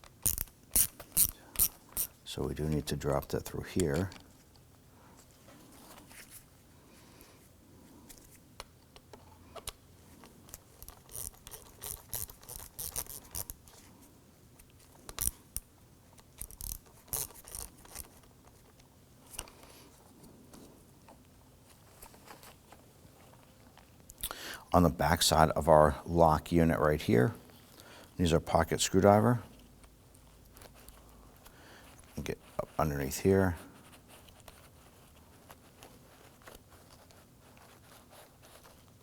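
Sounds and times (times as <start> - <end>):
small plastic and metal parts clicking: 0.1 - 2.1, 15.1 - 18.2.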